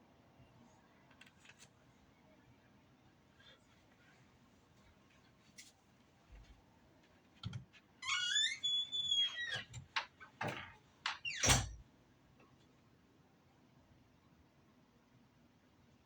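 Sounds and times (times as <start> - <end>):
door hinge squealing: 8.0 - 9.8.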